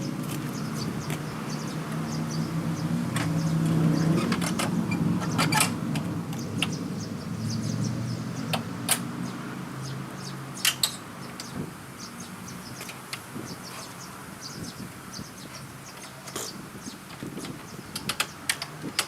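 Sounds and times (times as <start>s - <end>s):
low engine hum: 0.0s - 18.0s
sharp clicks and knocks of parts: 3.1s - 6.8s, 8.5s - 9.1s, 10.6s - 11.6s, 15.9s - 19.0s.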